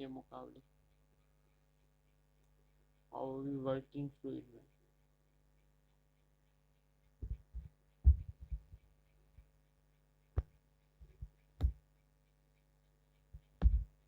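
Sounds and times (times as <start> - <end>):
faint steady hum: 0.0 - 14.0
low thumps and knocks: 7.2 - 8.8, 13.4 - 14.0.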